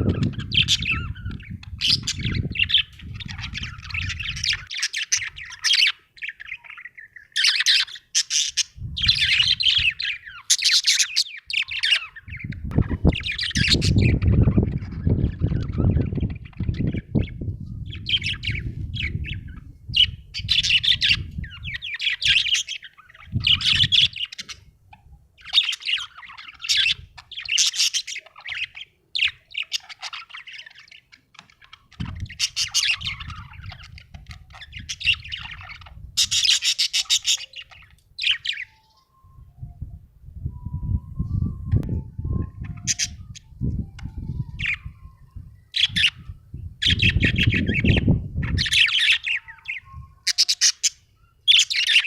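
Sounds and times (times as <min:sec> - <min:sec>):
budgerigar chirping and warbling: 0:00.0 - 0:39.2, 0:42.3 - 0:52.0
low rumble: 0:39.5 - 0:45.5.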